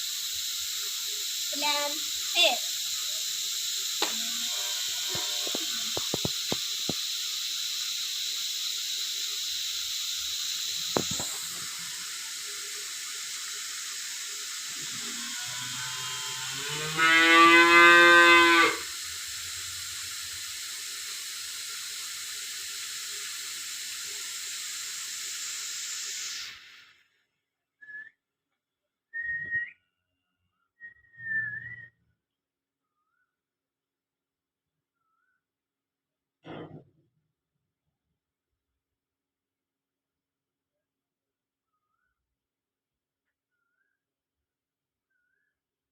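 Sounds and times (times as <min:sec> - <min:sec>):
shower spraying water: 0:00.0 - 0:27.3.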